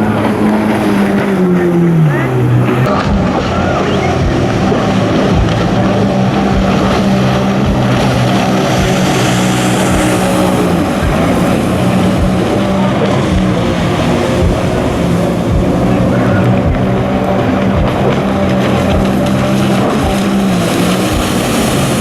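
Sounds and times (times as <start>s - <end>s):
jet ski engines: 0.0s - 22.0s
water and spray hissing: 5.4s - 16.0s, 17.5s - 22.0s.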